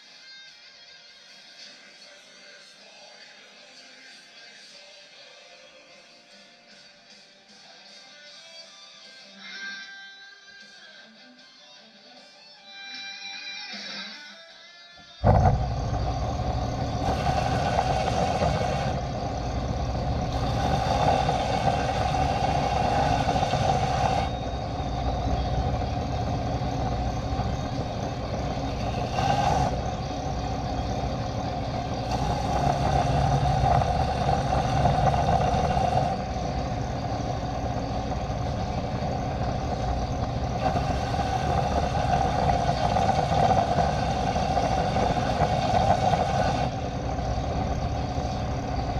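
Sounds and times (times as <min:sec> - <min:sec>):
harsh hiss: 0:15.2 - 0:48.9
shop machine motor running: 0:15.2 - 0:48.9.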